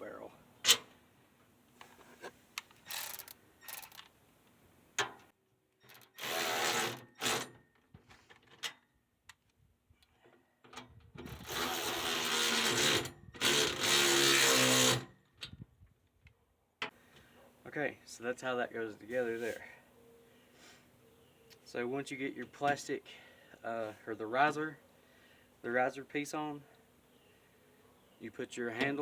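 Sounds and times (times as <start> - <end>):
power tool whirring: 2.8 - 4.0, 6.0 - 7.5, 11.3 - 15.1.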